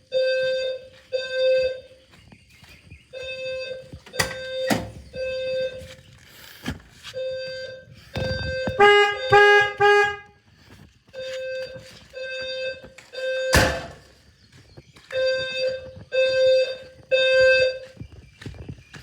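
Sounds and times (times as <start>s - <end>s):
low alarm horn blasts: 0.0s - 2.1s, 3.2s - 6.0s, 7.2s - 10.5s, 15.1s - 18.0s
fire alarm beeps: 0.0s - 6.2s, 7.2s - 10.2s, 11.1s - 19.0s.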